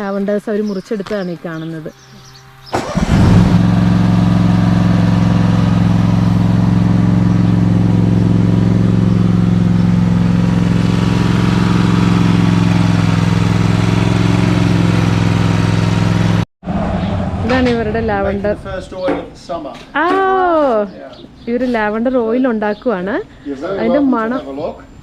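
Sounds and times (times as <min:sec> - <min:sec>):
vehicle engine idling: 0:02.4 - 0:19.7.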